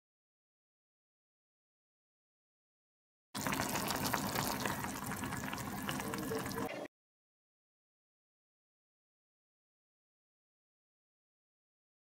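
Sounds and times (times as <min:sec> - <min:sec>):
liquid bubbling on the boil: 0:03.4 - 0:06.9.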